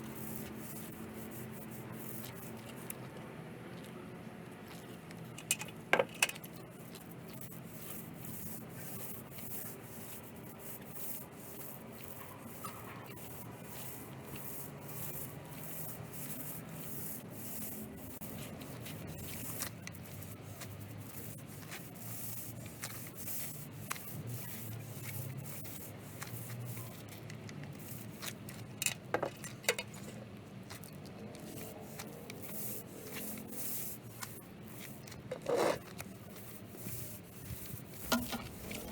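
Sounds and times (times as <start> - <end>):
tool scraping coating on roof: 31.6 - 38.9.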